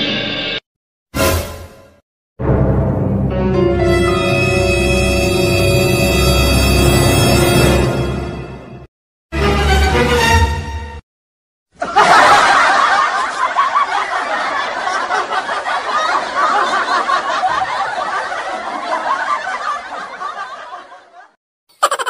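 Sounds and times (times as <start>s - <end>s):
laugh track: 11.8s - 22.0s.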